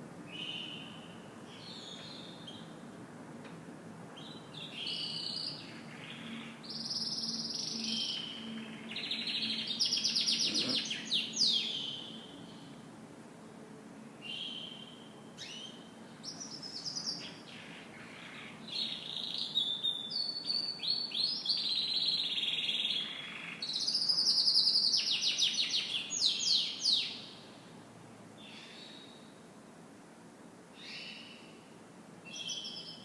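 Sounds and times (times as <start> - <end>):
canary singing trills and chirps: 4.2 - 12.6, 14.3 - 27.3.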